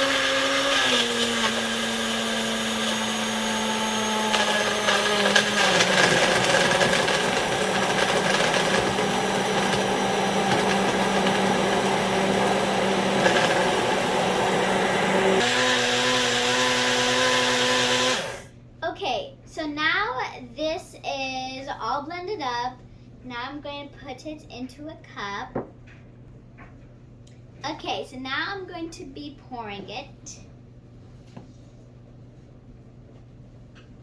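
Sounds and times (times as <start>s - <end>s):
countertop blender running: 0.0s - 18.5s.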